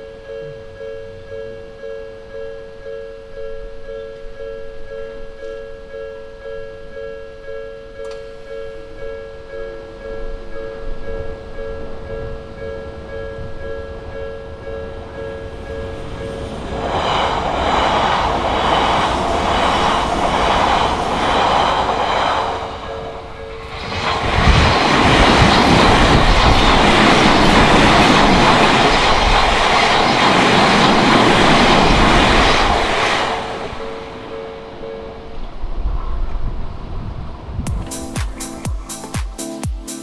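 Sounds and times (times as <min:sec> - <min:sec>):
crossing warning bell ringing: 0:00.0 - 0:35.7
train wheels clattering on rails: 0:10.5 - 0:34.6.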